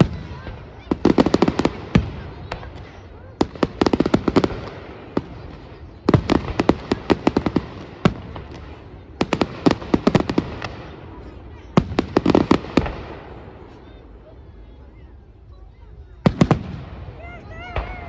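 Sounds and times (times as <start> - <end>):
loud single firework bangs: 0.0 - 13.8
fireworks bursting and crackling: 0.0 - 18.0.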